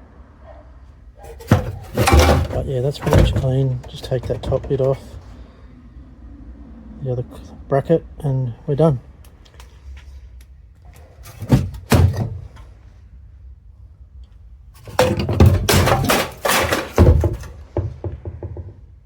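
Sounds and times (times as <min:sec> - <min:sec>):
metal knocking and clattering: 0:01.2 - 0:05.4, 0:11.2 - 0:12.7, 0:14.8 - 0:19.0.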